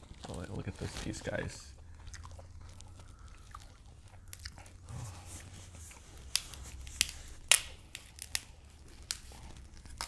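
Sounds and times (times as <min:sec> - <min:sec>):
crab shells snipped and cracked: 0:06.3 - 0:10.0.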